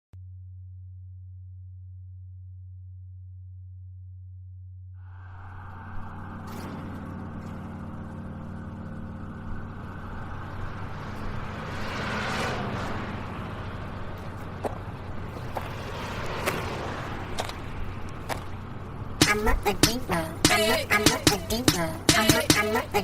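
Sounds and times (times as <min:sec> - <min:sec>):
vehicle engine humming: 0:05.0 - 0:23.0.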